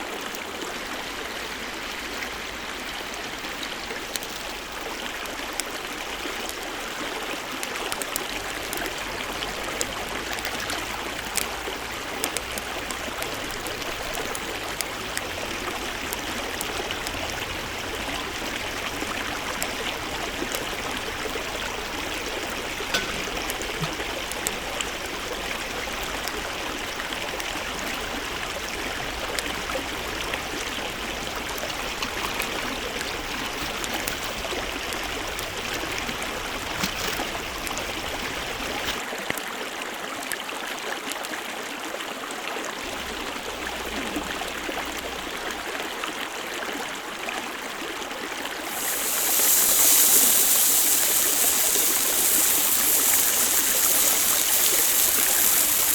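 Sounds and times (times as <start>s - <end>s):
meat sizzling over campfire: 2.9s - 35.9s, 48.6s - 55.9s
fire pops and crackles: 4.0s - 28.2s, 48.6s - 55.9s.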